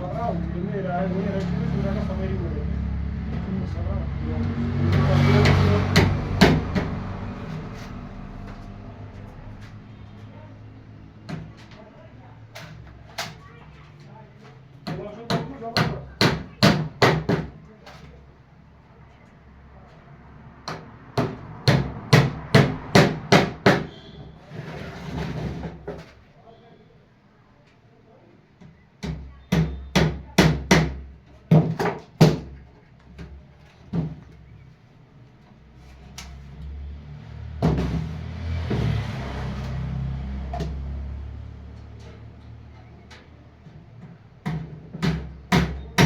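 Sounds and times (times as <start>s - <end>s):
hammer striking wood: 4.9s - 7.1s, 14.9s - 17.6s, 20.7s - 24.0s, 29.0s - 32.6s, 44.4s - 46.0s
sharp knocks: 4.9s - 7.1s.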